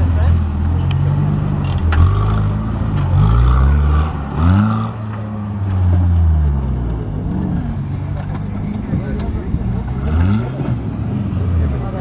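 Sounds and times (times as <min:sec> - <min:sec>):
engine revving hard: 0:01.2 - 0:05.2, 0:09.9 - 0:12.0.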